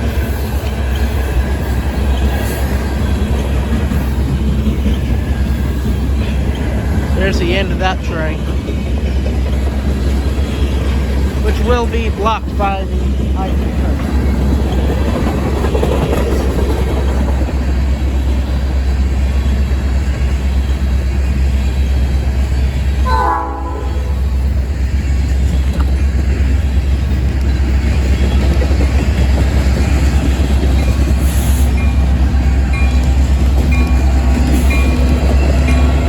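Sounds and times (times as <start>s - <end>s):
freight train rumbling: 0.0s - 36.0s
locomotive horn: 23.0s - 24.4s.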